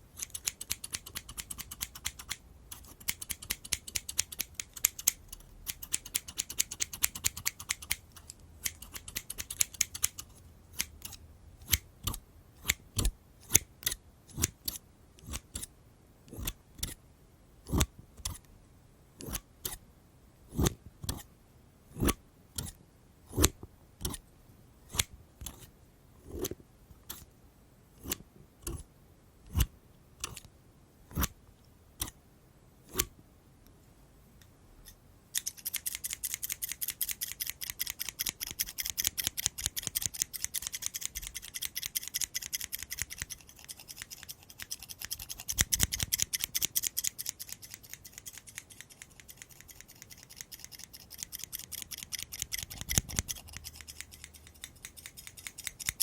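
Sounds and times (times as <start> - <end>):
scissors snipping: 0.2 - 15.7, 35.4 - 56.0
fast high-pitched clicks: 35.4 - 56.0.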